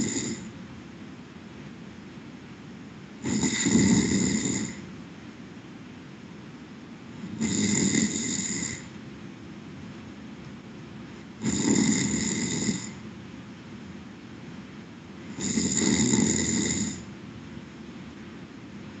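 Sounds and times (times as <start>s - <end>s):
person snoring: 0.0s - 0.5s, 3.2s - 4.9s, 7.2s - 8.9s, 11.4s - 13.0s, 15.3s - 17.1s.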